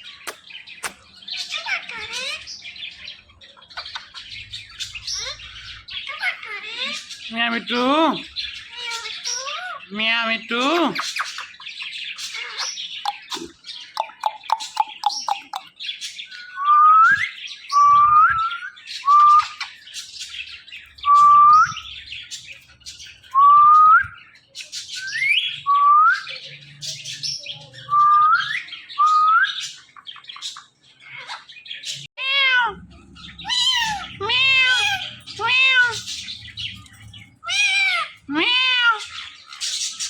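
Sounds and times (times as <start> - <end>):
parrot chirps and whistles: 16.4 - 19.7.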